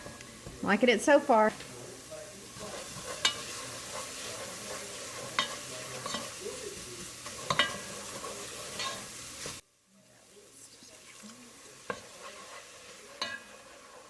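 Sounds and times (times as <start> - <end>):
food sizzling in a frying pan: 0.0 - 14.0.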